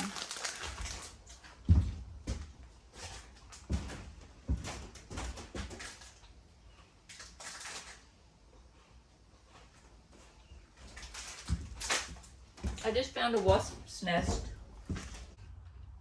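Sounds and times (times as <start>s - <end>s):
knocks and thuds of panels: 11.4s - 15.4s.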